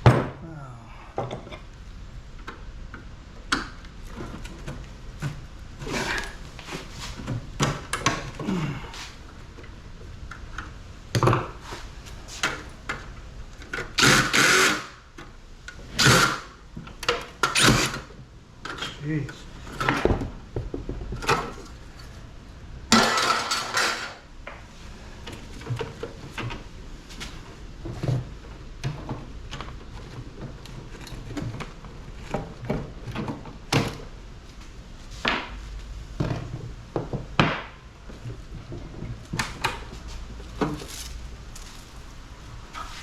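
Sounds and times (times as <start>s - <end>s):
metal parts clanking: 22.9s - 24.2s.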